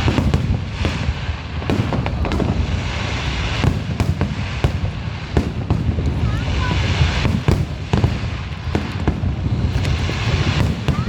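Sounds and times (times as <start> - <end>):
firework bangs: 0.0 - 11.0
low rumble and crackle: 0.0 - 11.0.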